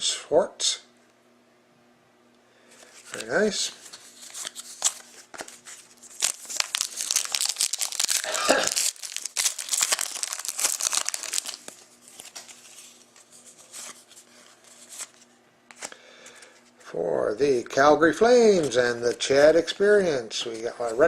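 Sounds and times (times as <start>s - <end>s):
card pack wrapper crinkling: 2.8s - 15.9s.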